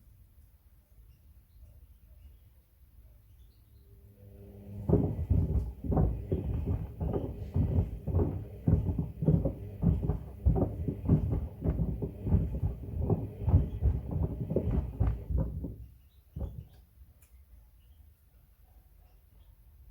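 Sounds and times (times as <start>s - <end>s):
wood knocking in washing machine drum: 4.8s - 16.8s.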